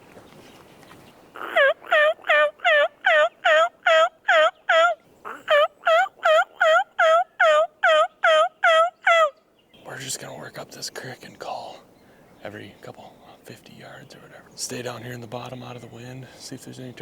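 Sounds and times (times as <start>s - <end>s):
turkey yelping: 1.4s - 9.4s.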